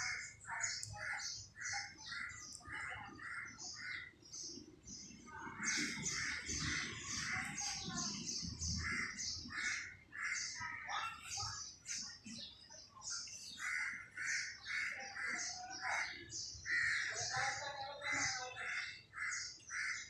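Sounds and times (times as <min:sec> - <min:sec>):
birds calling: 0:00.0 - 0:20.0.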